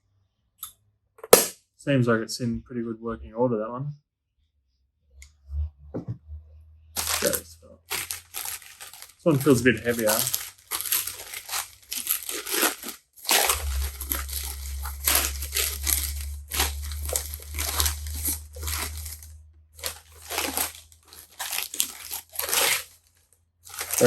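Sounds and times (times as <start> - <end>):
newspaper crumpling and tearing: 7.0 - 24.0.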